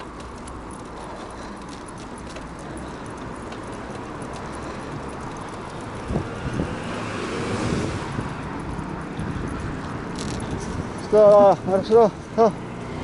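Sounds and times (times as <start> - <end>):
wind on microphone: 6.0 - 11.0.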